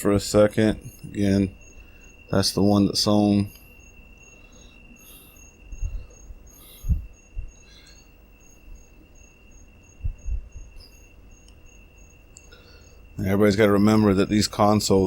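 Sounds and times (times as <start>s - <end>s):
pulsing high chirp: 0.7s - 15.0s
soft low thumps: 10.0s - 10.8s.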